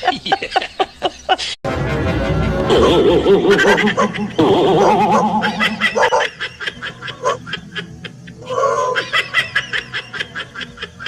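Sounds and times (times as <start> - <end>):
person snickering: 2.7 - 6.5.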